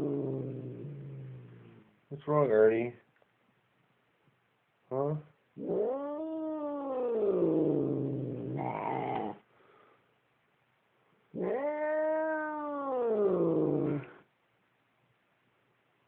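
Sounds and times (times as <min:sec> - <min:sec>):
cat growling yowls: 0:00.0 - 0:01.8, 0:05.6 - 0:09.4, 0:11.3 - 0:14.2.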